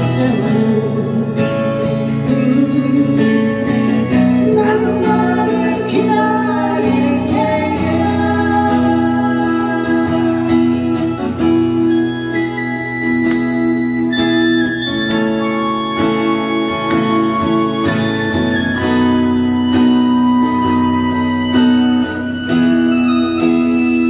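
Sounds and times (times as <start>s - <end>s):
person singing: 0.0s - 11.7s
guitar accompaniment: 0.0s - 24.0s.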